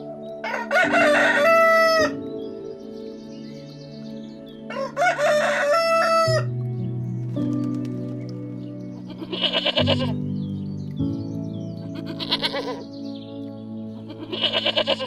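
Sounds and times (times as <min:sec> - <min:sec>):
background music: 0:00.0 - 0:15.0
small birds chirping: 0:00.0 - 0:15.0
rooster crowing: 0:00.4 - 0:02.2, 0:04.7 - 0:06.5
rapid bird calls: 0:08.9 - 0:10.2, 0:14.0 - 0:15.0.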